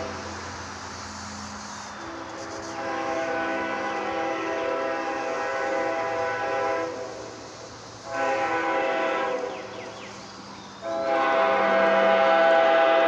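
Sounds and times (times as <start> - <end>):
train horn chord blasts: 2.1 - 7.2, 8.1 - 9.6, 10.8 - 13.0.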